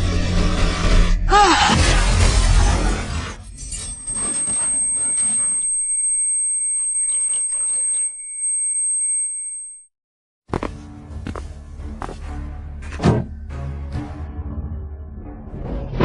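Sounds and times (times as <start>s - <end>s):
piercing high-pitched tone: 3.7s - 9.9s.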